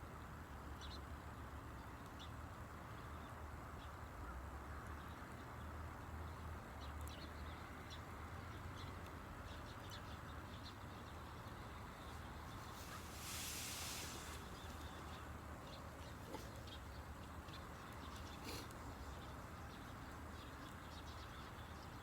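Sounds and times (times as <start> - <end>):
campfire crackling: 12.7 - 15.4.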